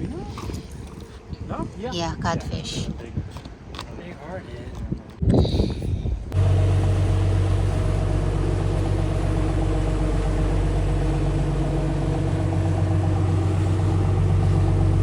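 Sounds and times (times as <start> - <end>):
motor engine humming steadily: 6.2 - 15.0.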